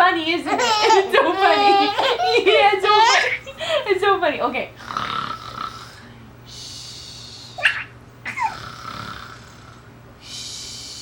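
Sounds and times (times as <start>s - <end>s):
mock snoring breaths: 4.8s - 6.0s, 8.4s - 9.9s.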